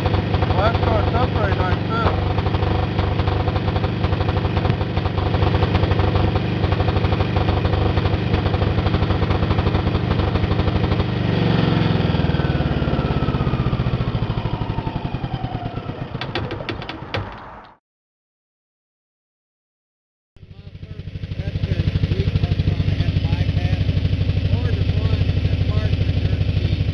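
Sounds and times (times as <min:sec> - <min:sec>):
diesel generator running: 0:00.0 - 0:17.1, 0:20.4 - 0:26.9.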